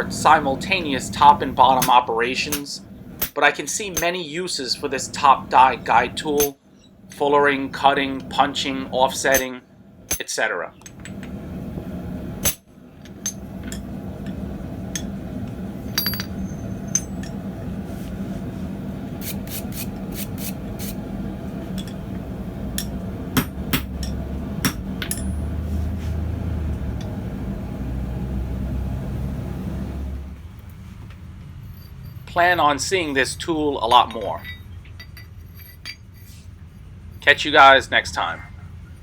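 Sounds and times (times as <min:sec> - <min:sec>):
steady low hum: 0:00.0 - 0:39.0
hammer striking steel: 0:01.7 - 0:04.2, 0:06.4 - 0:06.6, 0:09.3 - 0:10.3, 0:16.0 - 0:17.3, 0:22.8 - 0:25.5.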